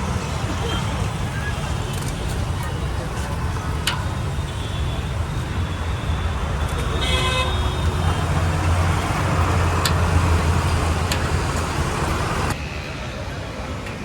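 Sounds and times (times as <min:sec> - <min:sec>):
road traffic passing: 0:00.0 - 0:14.0
vehicle horn toot: 0:06.7 - 0:08.0.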